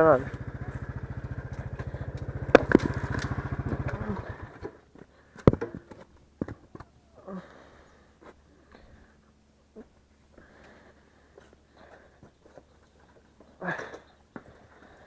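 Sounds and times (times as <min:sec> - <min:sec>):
small motorcycle engine idling: 0:00.0 - 0:06.0.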